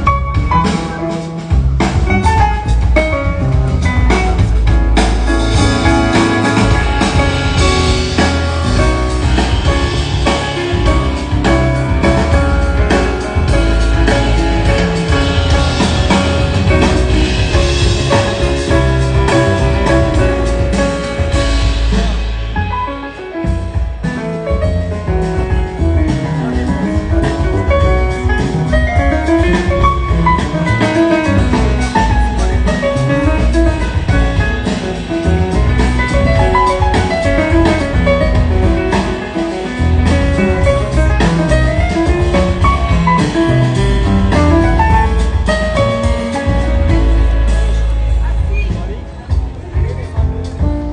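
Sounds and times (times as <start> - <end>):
bass: 0.0 - 50.9
drum kit: 0.0 - 50.9
piano melody: 0.0 - 50.9.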